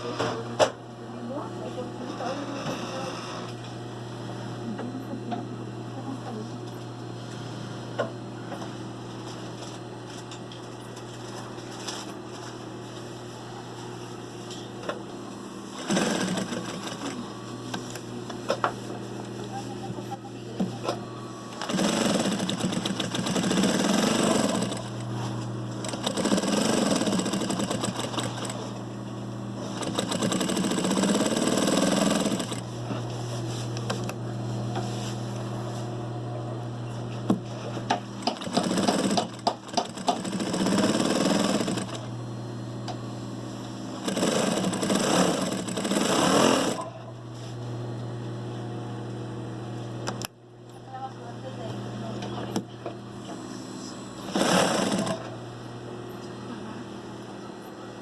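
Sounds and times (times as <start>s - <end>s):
motor hum: 0.0s - 58.0s
sewing machine sewing: 15.7s - 17.3s, 20.8s - 28.8s, 29.6s - 32.7s, 37.9s - 42.1s, 44.0s - 46.9s, 54.2s - 55.3s.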